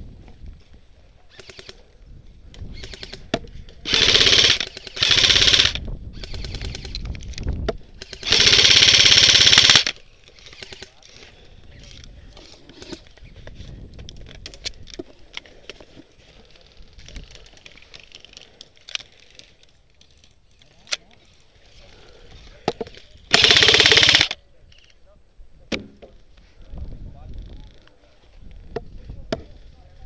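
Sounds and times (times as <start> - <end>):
airsoft gun bursts: 1.3 - 1.8, 2.7 - 7.0, 8.0 - 11.0, 23.3 - 24.4.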